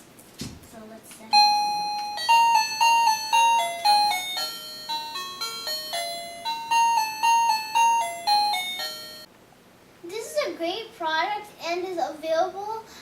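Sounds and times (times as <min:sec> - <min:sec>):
doorbell electronic ringtone melody: 0:01.3 - 0:09.3.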